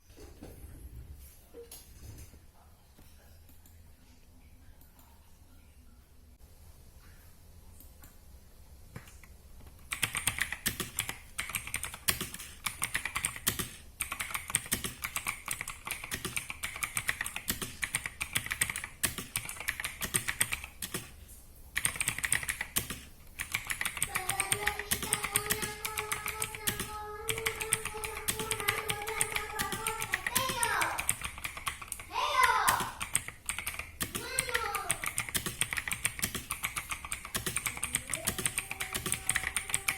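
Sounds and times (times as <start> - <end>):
clicky mechanical keyboard typing: 9.8 - 21.1, 21.8 - 32.1, 32.7 - 39.9.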